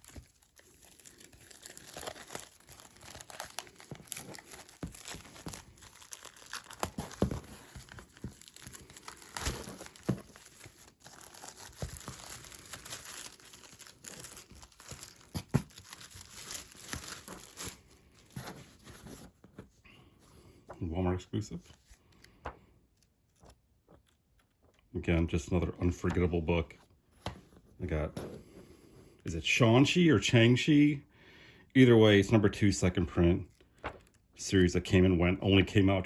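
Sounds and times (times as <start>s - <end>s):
plastic wrapping crinkling: 0.0s - 19.2s.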